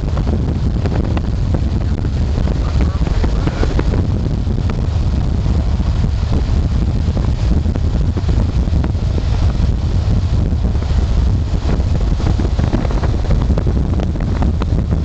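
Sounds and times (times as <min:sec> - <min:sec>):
tyre and wind rumble: 0:00.0 - 0:15.0.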